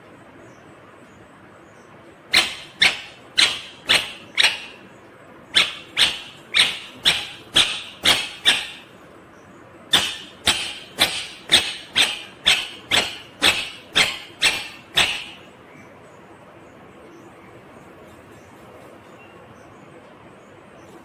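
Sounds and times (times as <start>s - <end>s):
parakeet sharp calls: 2.3s - 16.1s.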